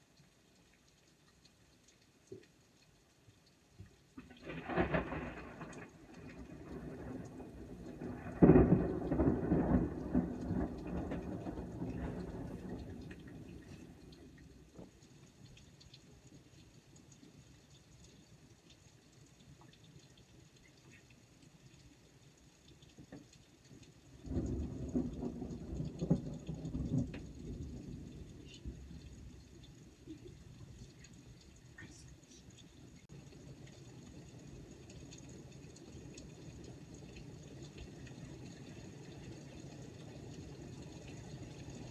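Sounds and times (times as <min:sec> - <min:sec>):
rain dripping: 0:00.0 - 0:41.9
thunder crack and rumble: 0:04.3 - 0:14.2, 0:24.2 - 0:29.5.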